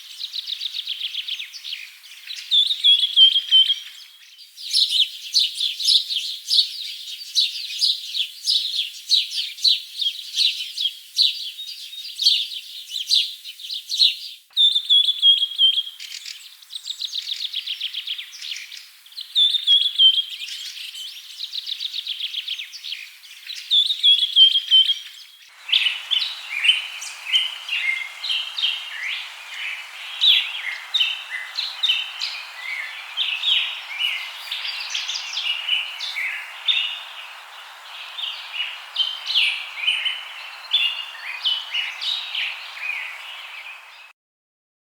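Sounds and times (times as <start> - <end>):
background hiss: 25.5 - 44.1
birds chirping and trilling: 25.5 - 44.1.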